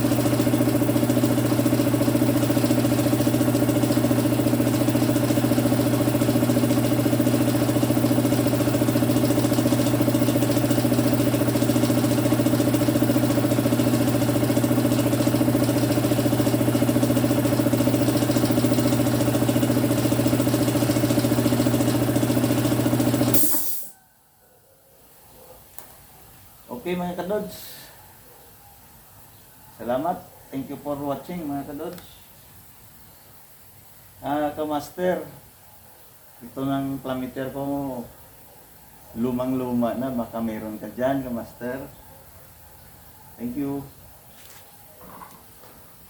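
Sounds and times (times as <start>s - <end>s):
electric compressor humming: 0.0s - 23.9s.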